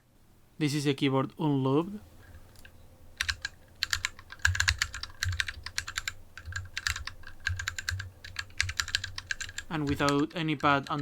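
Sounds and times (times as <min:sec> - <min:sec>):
mechanical keyboard typing: 0:02.5 - 0:11.0.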